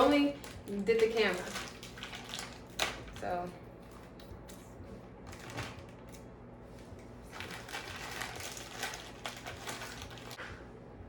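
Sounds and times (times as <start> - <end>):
packaging rustling and crinkling: 0.0 - 4.3, 5.3 - 6.3, 7.2 - 10.4.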